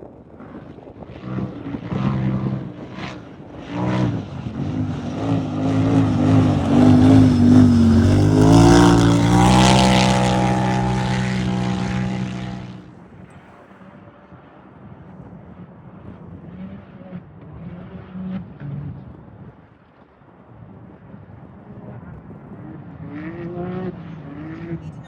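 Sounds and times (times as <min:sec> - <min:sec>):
race engine revving hard: 0:01.2 - 0:12.9.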